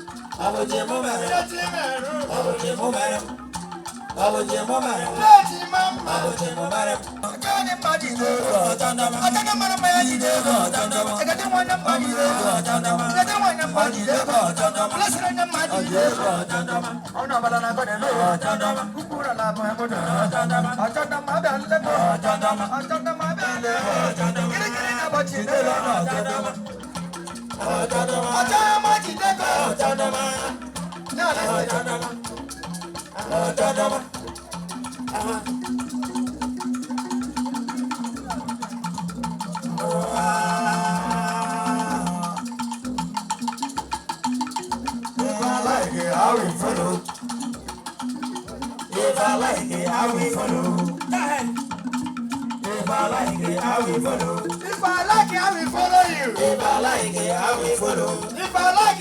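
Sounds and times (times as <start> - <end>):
busy percussion and shakers: 0.0 - 59.0
voices singing: 0.0 - 59.0
shaken rattles: 4.8 - 6.1, 26.6 - 27.6, 30.0 - 31.3, 32.0 - 33.2, 34.0 - 39.9, 40.6 - 46.2, 46.9 - 49.8, 50.6 - 59.0
singing in short phrases: 58.1 - 59.0.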